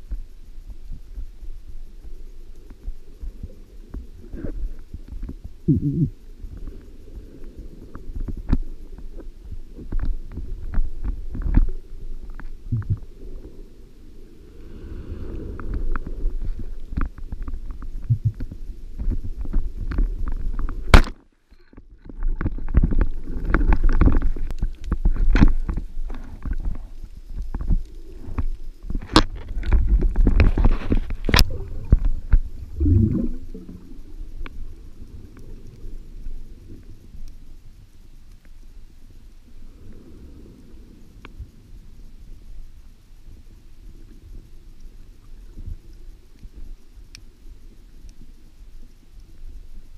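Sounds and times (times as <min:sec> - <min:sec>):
muffled water sloshing: 0:27.6 - 0:35.7.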